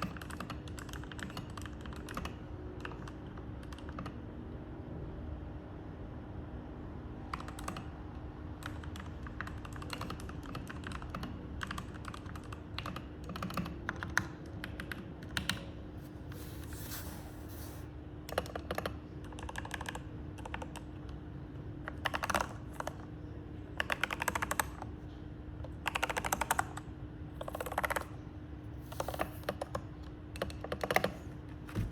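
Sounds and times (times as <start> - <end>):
mechanical keyboard typing: 0.0 - 4.2, 7.3 - 7.9, 8.6 - 15.7, 18.3 - 21.2, 21.8 - 23.1, 23.8 - 24.9, 25.7 - 28.2, 28.9 - 31.3.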